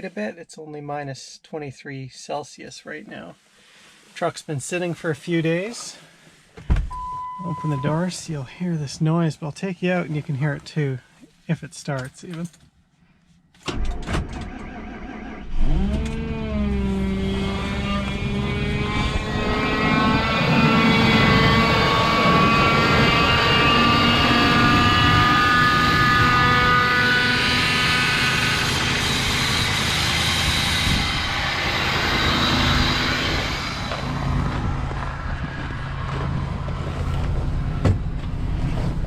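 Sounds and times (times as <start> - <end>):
groaning engine whine: 14.4 - 39.0.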